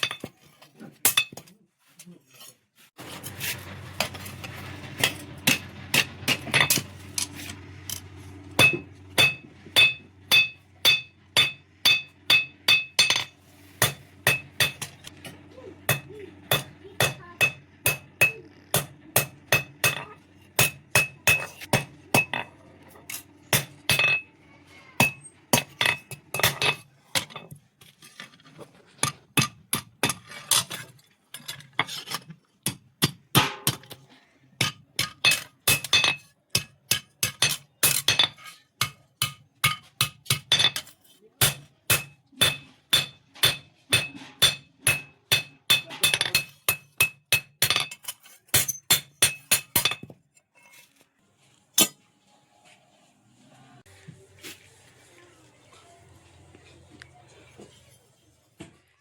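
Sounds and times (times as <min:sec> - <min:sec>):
steady low hum: 0:03.0 - 0:26.7
hammer striking metal on anvil: 0:05.0 - 0:15.1, 0:15.9 - 0:22.5, 0:23.1 - 0:24.3, 0:25.0 - 0:26.8, 0:33.0 - 0:34.0, 0:34.6 - 0:50.1.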